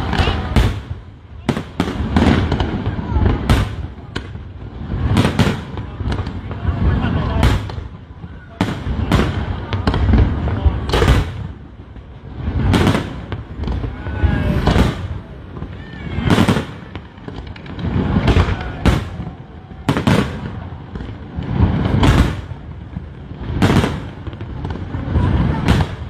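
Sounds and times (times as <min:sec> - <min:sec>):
low rumble: 0:12.3 - 0:16.0.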